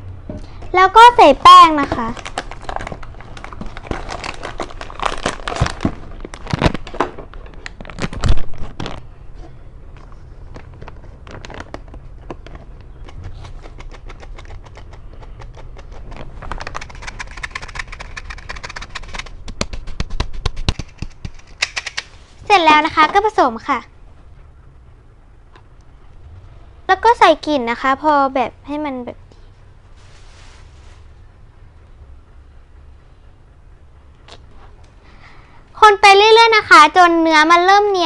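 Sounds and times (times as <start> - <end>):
flour clicking and rattling in bowl: 13.6 - 22.0.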